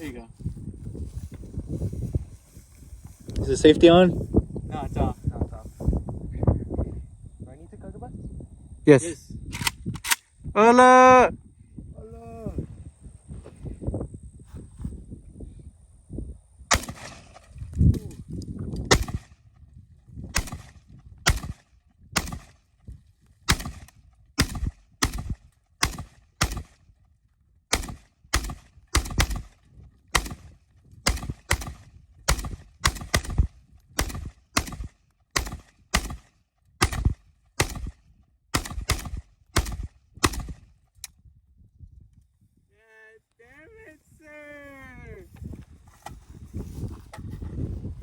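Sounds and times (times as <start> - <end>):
gunshots: 16.7 - 17.5, 18.9 - 19.3, 20.4 - 22.6, 23.5 - 26.8, 27.7 - 29.5, 30.1 - 30.5, 31.1 - 40.6.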